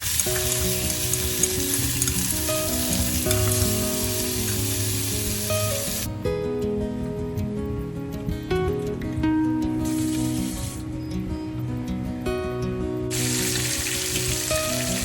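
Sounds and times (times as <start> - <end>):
hot oil sizzling: 0.0 - 6.1, 9.8 - 10.8, 13.1 - 15.0
background music: 0.0 - 15.0.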